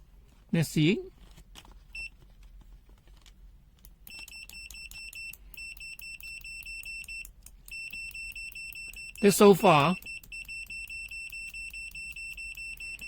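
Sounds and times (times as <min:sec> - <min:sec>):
multimeter buzzer beeping: 0:04.1 - 0:13.0.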